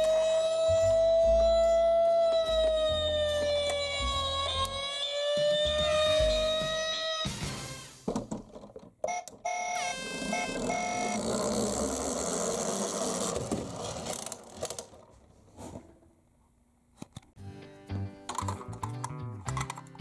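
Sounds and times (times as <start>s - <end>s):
toy cars rolling on plastic: 8.2s - 15.4s
siren-like electronic beeps: 9.2s - 11.3s.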